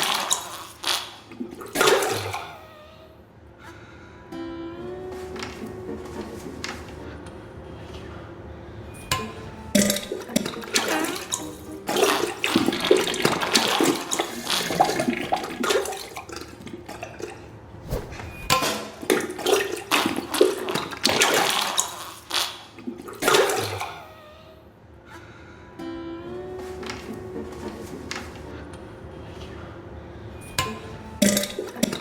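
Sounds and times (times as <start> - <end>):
wet sputtering flatulence: 0.0 - 2.7, 19.9 - 24.0.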